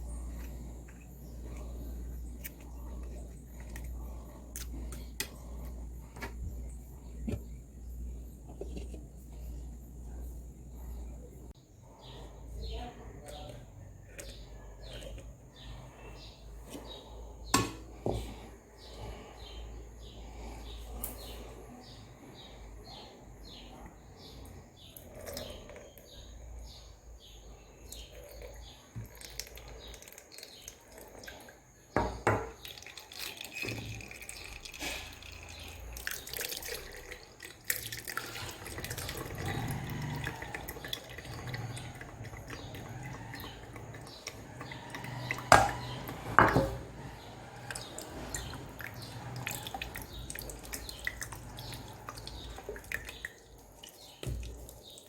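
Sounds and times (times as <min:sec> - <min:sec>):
pots and utensils clinking: 0:17.5 - 0:18.3
water running and dripping: 0:27.9 - 0:31.7, 0:32.5 - 0:46.4, 0:47.0 - 0:55.0.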